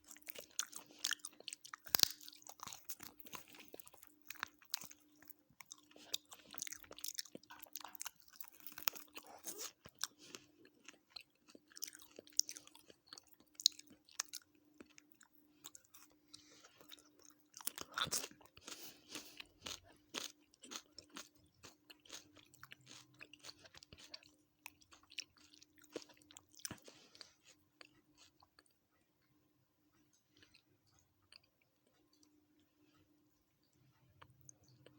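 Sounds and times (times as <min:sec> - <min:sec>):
chewing and crunching food: 0:00.0 - 0:34.9
faint low hum: 0:00.0 - 0:34.9.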